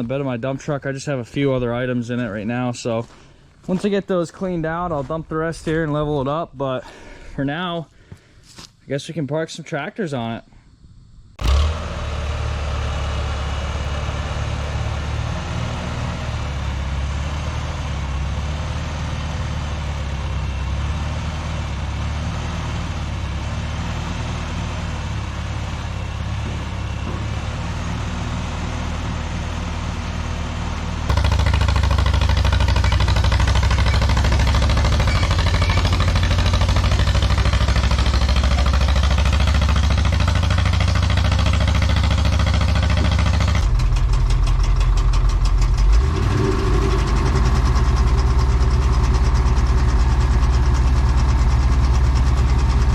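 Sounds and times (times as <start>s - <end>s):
tractor engine chugging: 11.4s - 52.9s.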